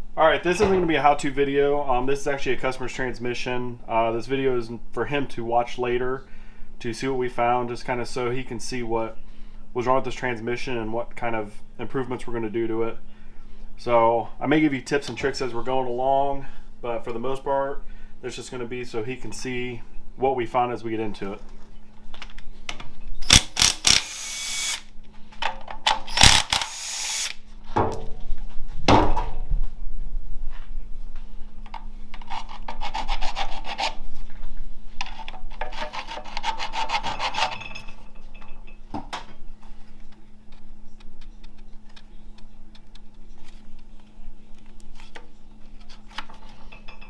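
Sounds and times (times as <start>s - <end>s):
rasping metal scraping: 32.2s - 34.0s, 35.0s - 37.9s
metal tools knocking and clinking: 37.4s - 38.8s.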